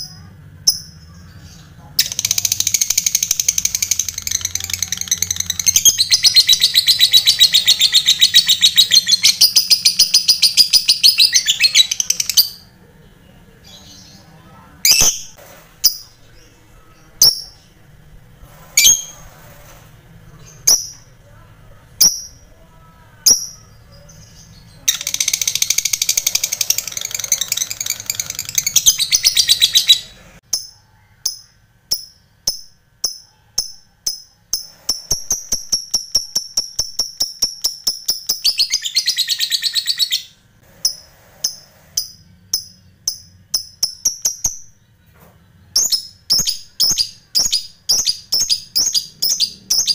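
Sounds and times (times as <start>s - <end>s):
lovebird calling: 0.7s - 12.7s, 23.3s - 30.2s
fast chattering trill: 2.0s - 12.8s, 24.8s - 30.2s.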